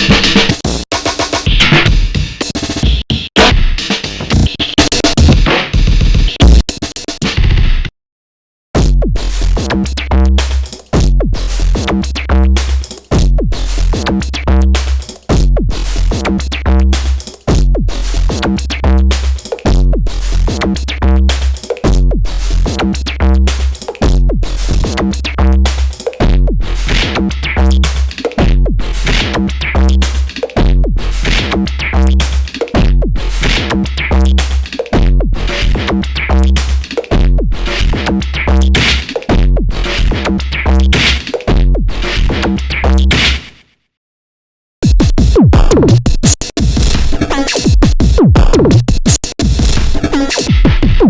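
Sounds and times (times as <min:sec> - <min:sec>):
drum machine groove: 0:00.0 - 0:07.9, 0:08.8 - 0:43.5, 0:44.8 - 0:51.0
deep bass: 0:08.8 - 0:43.2, 0:44.8 - 0:47.2, 0:47.8 - 0:50.1.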